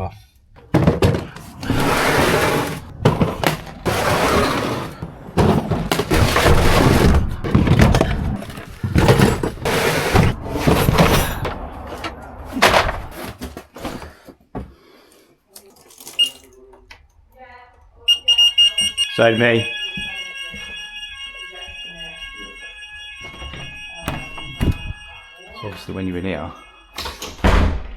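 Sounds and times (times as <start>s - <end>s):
tools clattering and rummaging: 0.6s - 14.3s, 15.5s - 16.7s.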